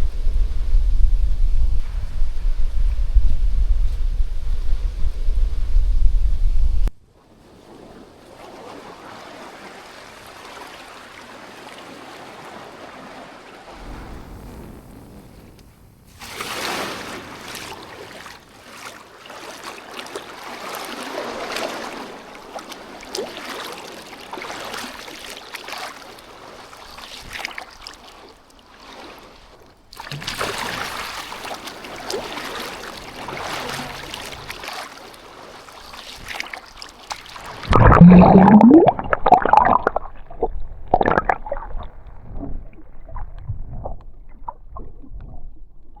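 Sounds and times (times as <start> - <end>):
waves washing onto sandy beach: 7.2 - 37.8.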